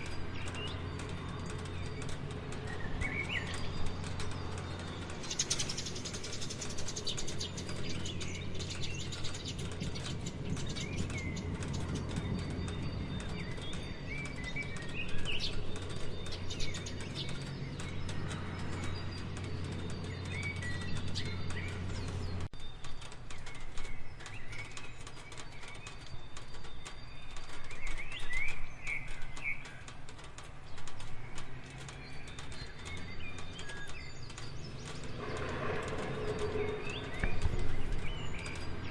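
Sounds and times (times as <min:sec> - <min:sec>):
small birds chirping: 0:00.0 - 0:38.9
steady rain: 0:22.3 - 0:38.9.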